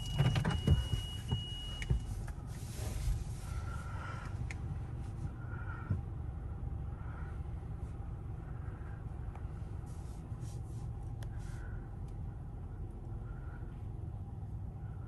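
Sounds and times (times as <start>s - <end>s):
car engine idling: 0.0s - 15.0s.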